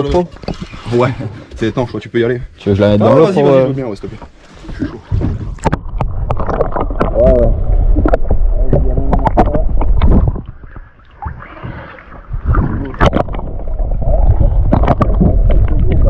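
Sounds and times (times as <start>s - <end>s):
rumbling water with splashes: 3.9s - 16.0s.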